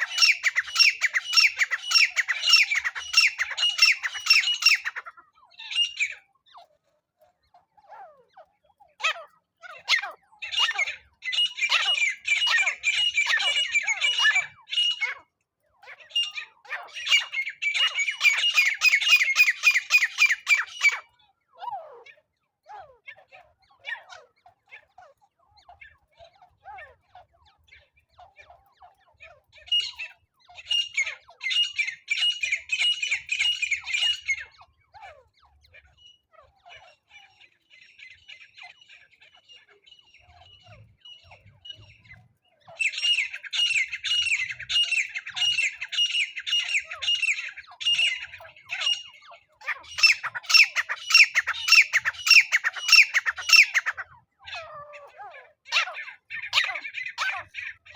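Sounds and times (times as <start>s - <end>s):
francolin calling harshly: 0.0s - 5.0s, 17.0s - 21.0s, 49.8s - 54.0s.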